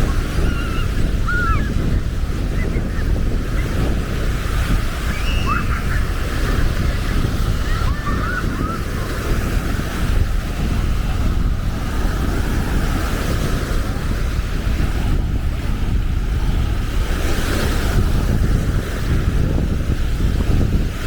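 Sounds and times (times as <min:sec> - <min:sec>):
waves breaking on beach: 0:00.0 - 0:21.0
wind buffeting microphone: 0:00.0 - 0:21.0.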